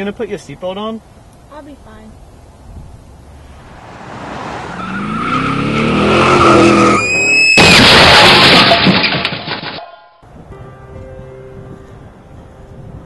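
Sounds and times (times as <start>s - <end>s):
car engine revving: 3.2s - 7.6s
loud car crash: 3.6s - 9.9s
tyres screeching: 4.5s - 9.2s.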